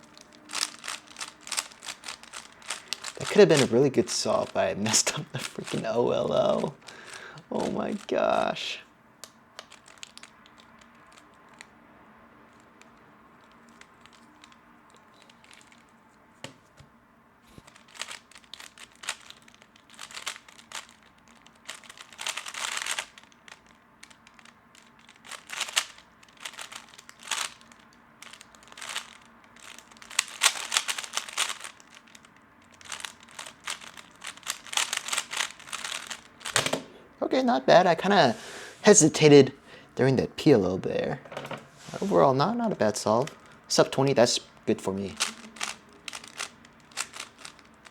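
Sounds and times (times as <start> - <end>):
puzzle cube plastic clicking: 0.0 - 8.6, 9.2 - 11.7, 12.5 - 15.9, 17.6 - 36.9, 44.8 - 47.9.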